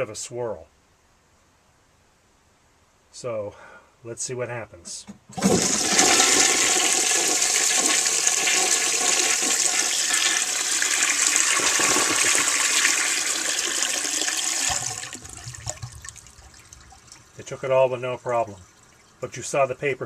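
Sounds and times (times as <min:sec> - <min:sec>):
toilet flushing: 0:05.3 - 0:19.3.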